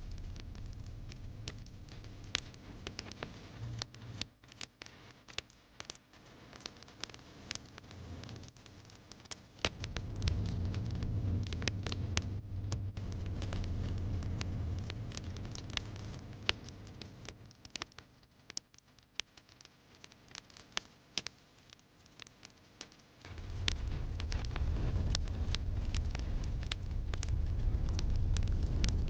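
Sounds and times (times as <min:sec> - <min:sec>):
low rumble: 0:00.0 - 0:02.8, 0:09.7 - 0:17.2, 0:23.3 - 0:29.0
wood fire crackling: 0:00.0 - 0:29.0.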